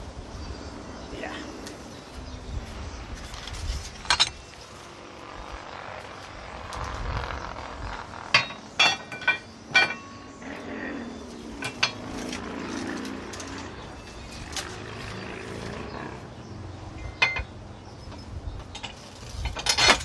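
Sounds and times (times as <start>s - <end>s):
metal parts and tools clinking: 3.2s - 4.9s, 8.3s - 10.7s, 11.3s - 15.6s, 17.0s - 20.0s.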